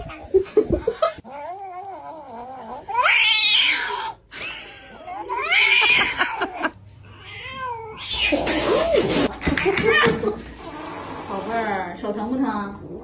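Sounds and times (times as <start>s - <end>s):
cat yowling: 2.8s - 8.9s.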